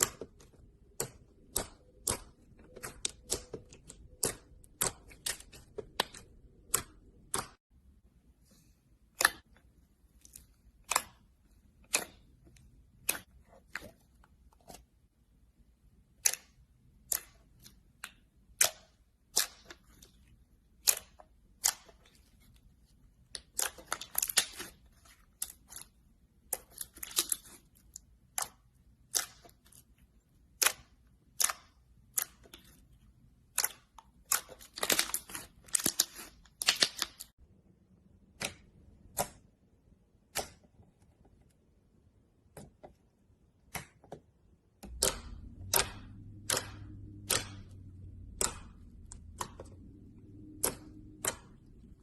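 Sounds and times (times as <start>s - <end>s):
slime clicking and popping: 23.3s - 32.7s, 33.4s - 37.3s, 44.8s - 52.0s.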